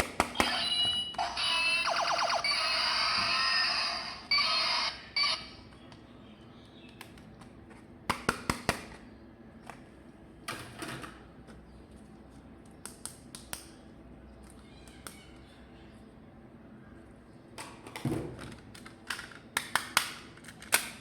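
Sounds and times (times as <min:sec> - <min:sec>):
electronic toy sound effect: 0:00.4 - 0:05.6.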